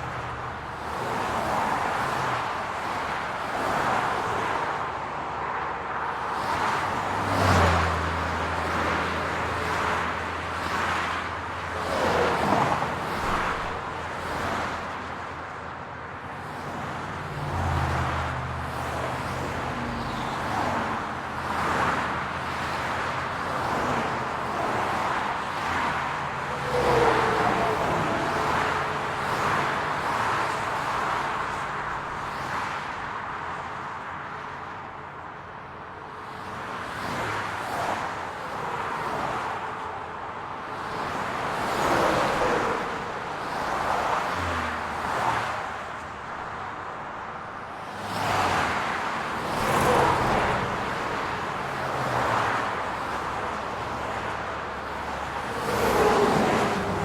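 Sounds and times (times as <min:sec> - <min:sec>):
cars passing: 0:00.0 - 0:57.0.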